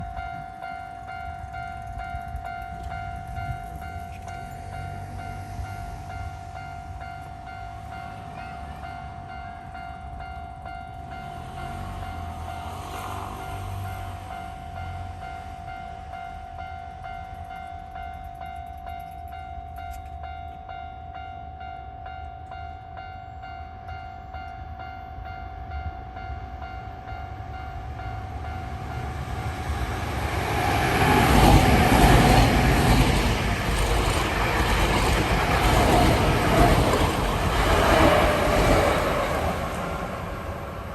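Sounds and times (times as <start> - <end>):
train rumbling on rails: 0.0 - 40.9.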